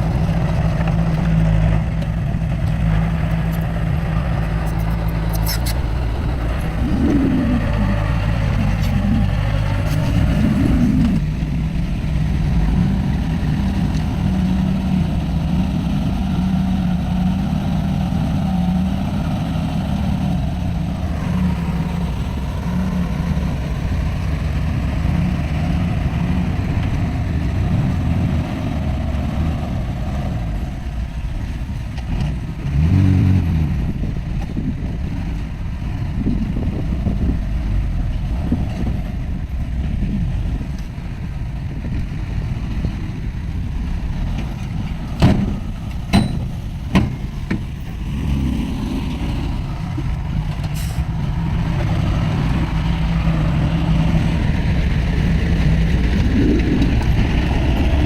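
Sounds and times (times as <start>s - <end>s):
heavy diesel machinery running: 0.0s - 58.0s
sharp metal clanks: 46.1s - 47.1s.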